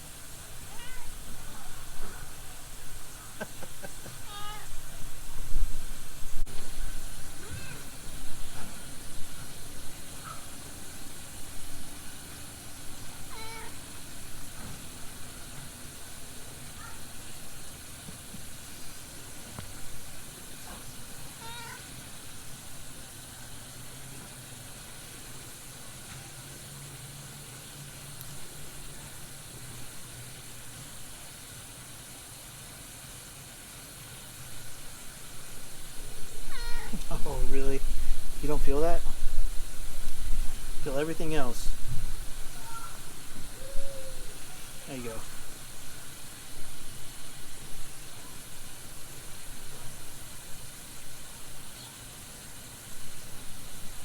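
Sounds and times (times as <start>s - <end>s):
steady background hiss: 0.0s - 54.0s
cat meowing: 0.7s - 1.2s, 4.2s - 4.8s, 7.4s - 7.9s, 13.3s - 13.8s, 21.4s - 21.9s, 36.5s - 37.1s.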